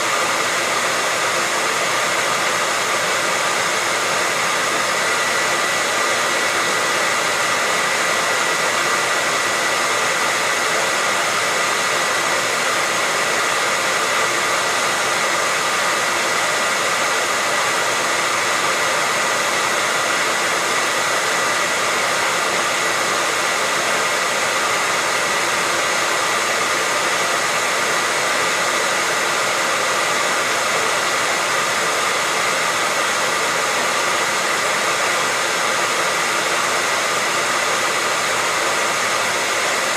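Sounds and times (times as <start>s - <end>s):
hair dryer running: 0.0s - 39.9s.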